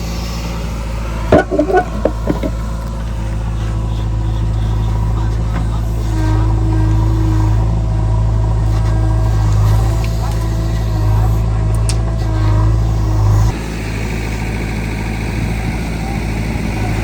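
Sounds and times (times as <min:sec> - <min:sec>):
diesel engine droning: 0:00.0 - 0:17.0
sharp knocks: 0:01.3 - 0:02.6.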